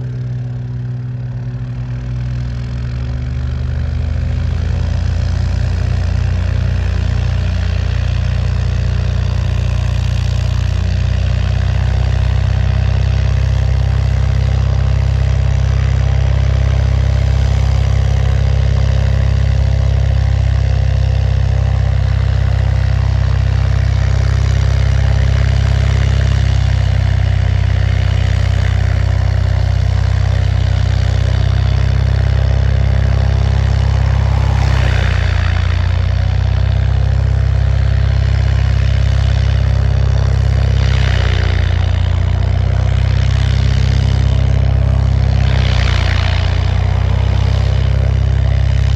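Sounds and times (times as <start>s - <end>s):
engine idling: 0.0s - 48.9s.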